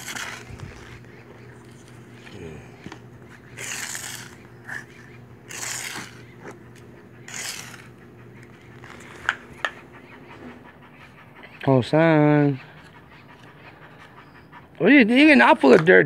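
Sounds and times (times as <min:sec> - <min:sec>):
dog scuffling in dirt: 0:00.0 - 0:10.6
steady low hum: 0:00.0 - 0:16.0.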